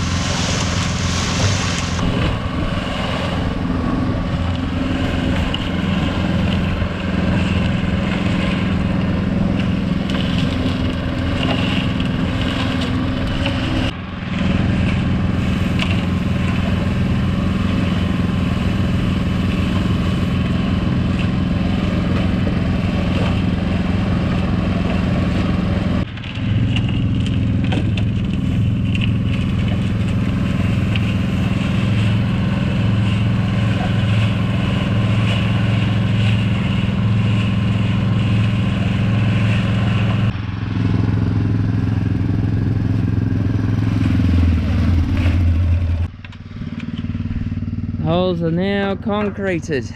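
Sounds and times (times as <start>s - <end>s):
cement mixer motor hum: 0.0s - 49.9s.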